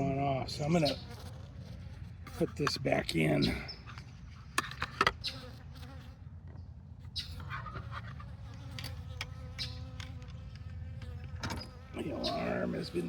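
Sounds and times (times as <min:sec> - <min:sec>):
honeybees buzzing: 0:00.0 - 0:03.8, 0:07.8 - 0:13.0.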